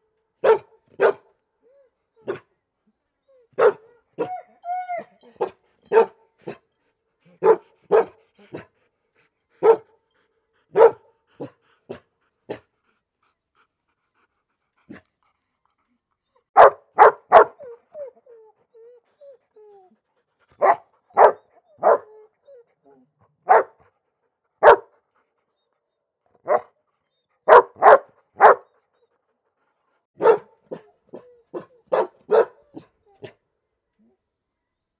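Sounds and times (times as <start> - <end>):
dog barking: 0.4 - 1.3, 3.6 - 3.9, 5.4 - 6.6, 7.4 - 8.2, 9.6 - 9.9, 10.7 - 11.5, 16.6 - 17.6, 20.6 - 22.1, 23.4 - 23.8, 24.6 - 24.9, 26.4 - 26.7, 27.5 - 28.7, 30.2 - 30.9, 31.5 - 32.8.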